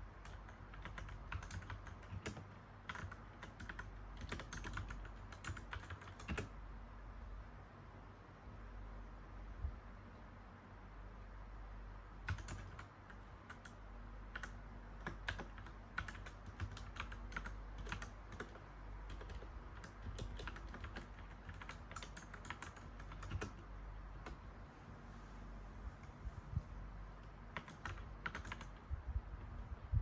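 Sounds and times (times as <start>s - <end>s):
faint low hum: 0.0s - 30.0s
mechanical keyboard typing: 0.1s - 6.6s, 12.2s - 24.4s, 27.5s - 28.9s.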